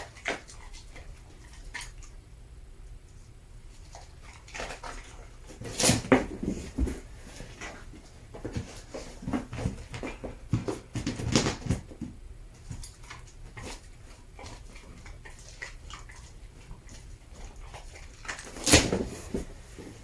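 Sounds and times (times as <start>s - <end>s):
dog paws tapping on hard floor: 5.5s - 13.8s.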